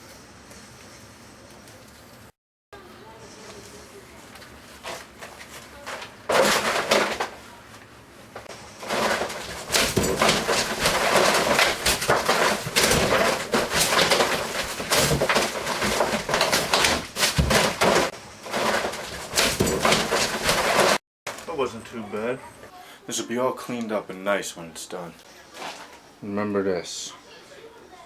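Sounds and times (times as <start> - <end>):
wall material scraping and tearing: 4.7 - 7.5, 8.4 - 21.0.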